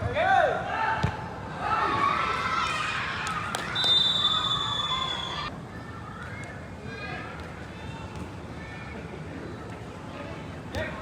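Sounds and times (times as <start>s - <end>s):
whistle blast: 3.7s - 5.5s.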